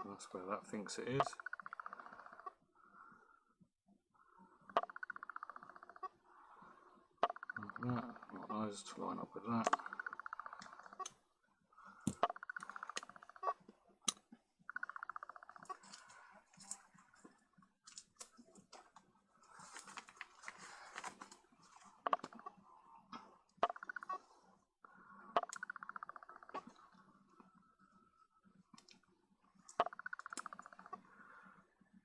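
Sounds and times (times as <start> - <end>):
sharp clicks and taps: 12.1 - 13.2.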